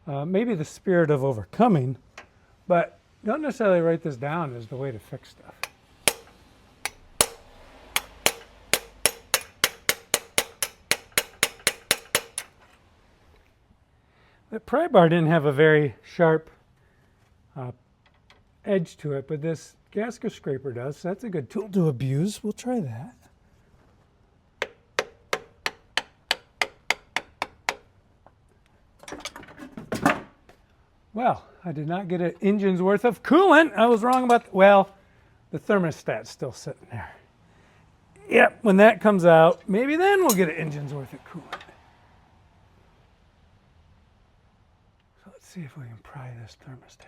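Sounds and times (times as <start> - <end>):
hammer striking pry bar: 5.6 - 12.6, 24.6 - 27.9, 39.5 - 40.9.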